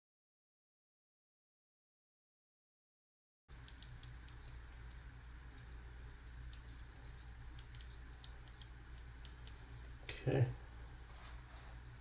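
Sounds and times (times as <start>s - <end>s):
steady low hum: 3.5s - 12.0s.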